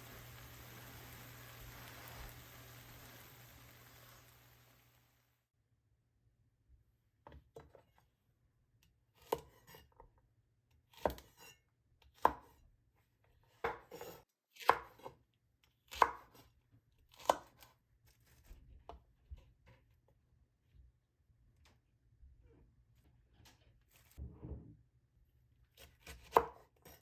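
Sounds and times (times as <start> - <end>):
knife chopping on cutting board: 9.2 - 9.8, 10.9 - 11.5, 12.1 - 12.6, 13.5 - 15.2, 15.9 - 16.4, 17.1 - 17.7, 25.8 - 27.0.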